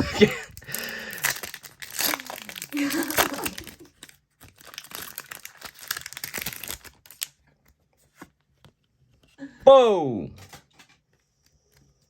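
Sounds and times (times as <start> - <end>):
foil wrapper crinkling and tearing: 0.3 - 7.4.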